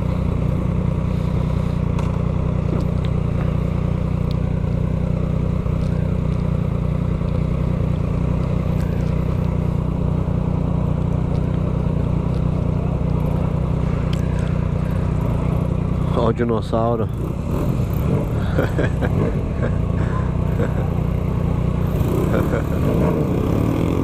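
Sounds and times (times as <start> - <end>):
motorcycle engine running: 0.0 - 24.0.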